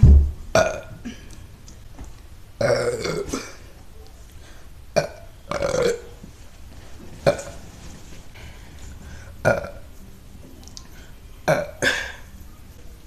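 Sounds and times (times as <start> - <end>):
woman burping: 0.5 - 1.4, 2.6 - 3.6, 11.5 - 12.2.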